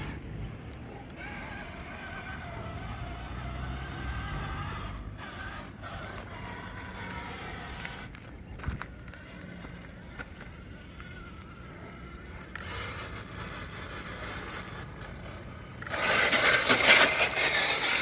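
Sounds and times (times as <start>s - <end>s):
electric toy truck motor whine: 0.0s - 18.0s.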